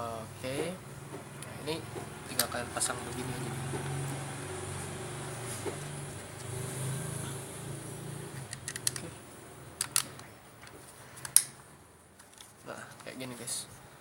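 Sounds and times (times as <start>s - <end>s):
plastic clicks and snaps: 8.5s - 9.1s, 9.8s - 11.5s.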